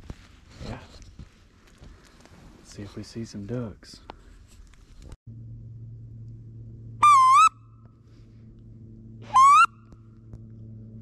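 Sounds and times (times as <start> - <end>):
faint low hum: 0.1 - 11.0
duck call whistle: 7.0 - 7.6, 9.2 - 9.8.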